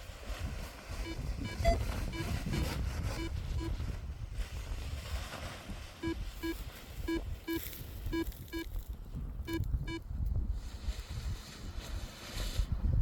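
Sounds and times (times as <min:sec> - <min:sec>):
wind rumble on microphone: 0:00.0 - 0:13.0
variometer beeps in pairs: 0:01.0 - 0:03.8, 0:06.0 - 0:08.8, 0:09.4 - 0:10.1.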